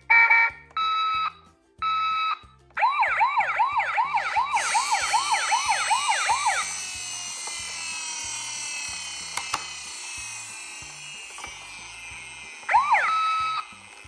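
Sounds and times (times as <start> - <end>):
background music beat: 0.0 - 14.0
toy electronic siren yelping: 0.1 - 14.0
hissing with falling tones: 4.2 - 7.0.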